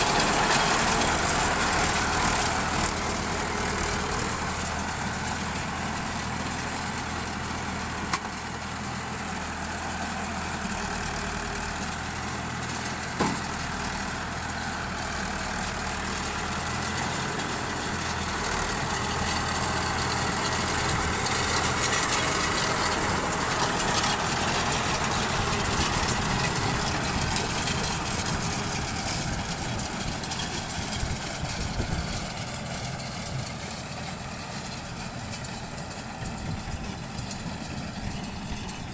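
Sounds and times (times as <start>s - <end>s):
baler machinery noise: 0.0s - 38.9s
tractor engine running: 0.0s - 38.9s.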